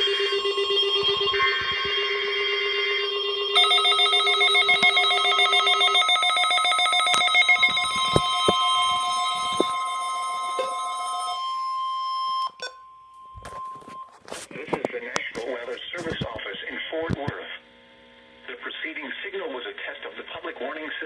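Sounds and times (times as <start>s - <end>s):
rapidly trilling alarm: 0.0s - 12.6s
steady high warning tone: 0.0s - 14.4s.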